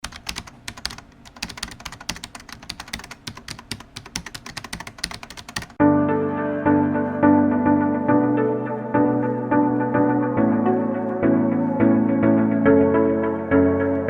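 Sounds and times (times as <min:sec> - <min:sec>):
typing on a keyboard: 0:00.0 - 0:05.8
music with keyboard chords: 0:05.8 - 0:14.0.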